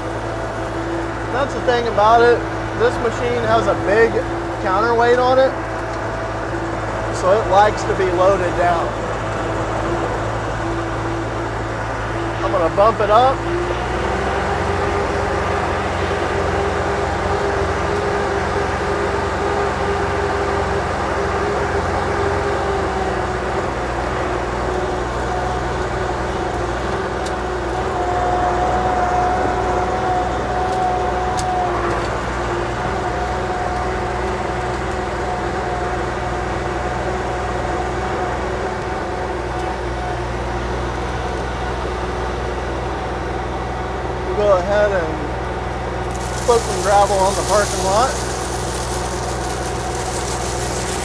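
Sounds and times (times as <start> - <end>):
engine running: 0.0 - 51.0
machine whine: 0.0 - 51.0.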